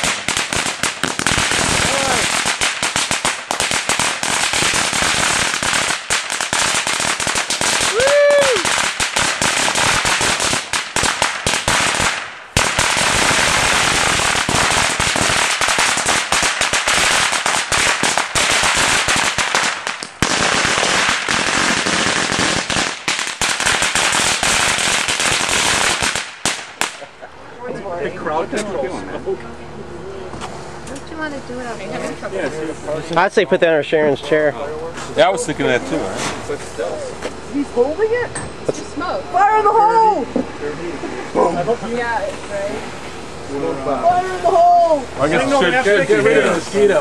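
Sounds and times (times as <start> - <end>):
firecrackers popping: 0.0 - 27.1.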